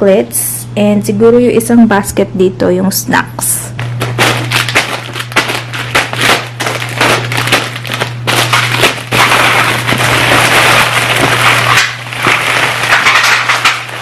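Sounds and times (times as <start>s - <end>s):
plastic wrappers crinkling: 3.8s - 14.0s.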